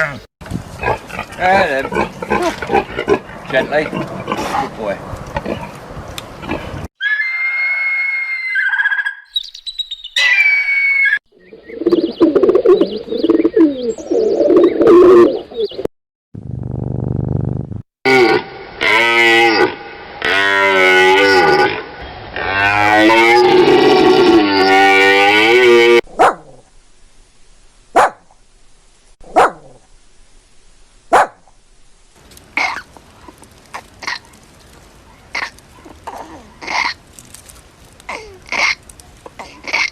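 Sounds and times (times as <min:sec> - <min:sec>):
dog barking: 0:26.1 - 0:26.6, 0:28.0 - 0:28.2, 0:29.3 - 0:29.8, 0:31.1 - 0:31.4.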